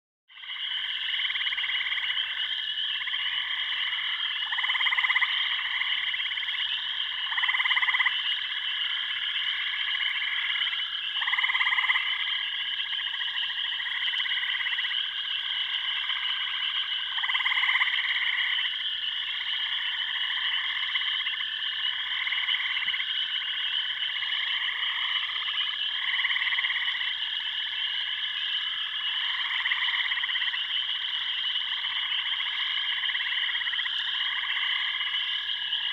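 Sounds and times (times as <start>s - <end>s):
frogs trilling: 0.3s - 35.9s
low frog calls: 0.3s - 35.9s.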